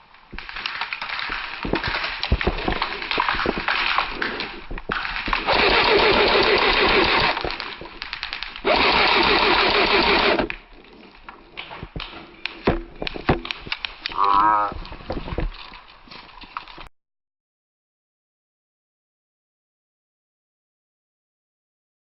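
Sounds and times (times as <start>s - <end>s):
airsoft rifle full-auto bursts: 5.4s - 7.4s, 8.6s - 10.5s.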